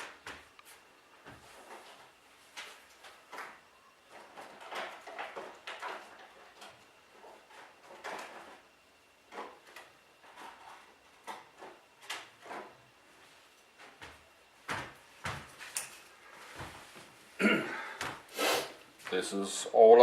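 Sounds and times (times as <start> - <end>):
small knocks clicks and rustles: 0.0 - 8.6, 9.3 - 12.8.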